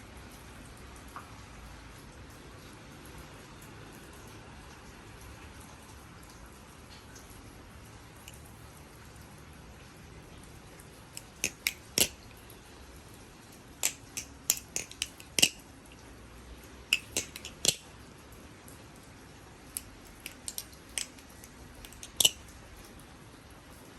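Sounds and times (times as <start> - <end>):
butterfly knife clicking: 11.2 - 12.3, 13.8 - 16.0, 16.9 - 17.9, 19.7 - 22.5.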